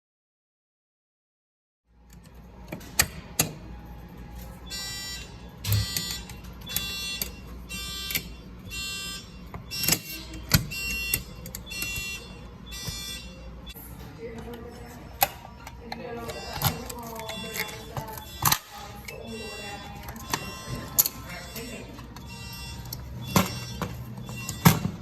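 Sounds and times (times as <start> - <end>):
fire alarm horn blasts: 4.5 - 13.9, 15.1 - 25.0.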